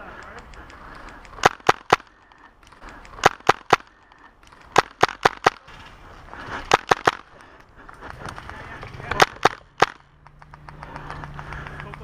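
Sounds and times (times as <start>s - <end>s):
airsoft rifle shots: 1.3s - 2.2s, 3.0s - 5.8s, 6.6s - 7.3s, 9.1s - 10.1s.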